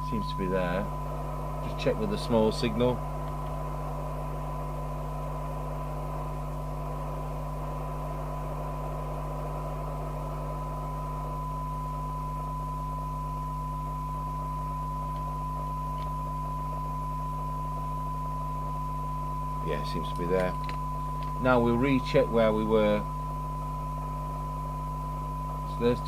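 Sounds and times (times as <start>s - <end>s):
radio hiss: 0.0s - 11.5s, 19.5s - 26.0s
steady low hum: 0.0s - 26.0s
steady test tone from radio speaker: 0.0s - 26.0s.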